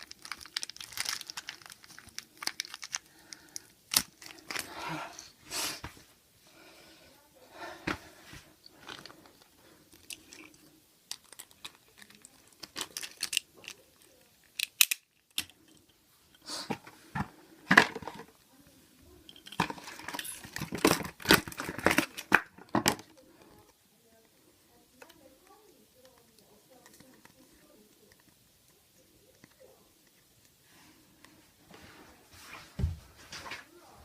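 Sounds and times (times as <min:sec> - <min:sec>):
packaging crinkling and tearing: 0:00.0 - 0:04.7, 0:08.8 - 0:15.4, 0:19.6 - 0:23.1.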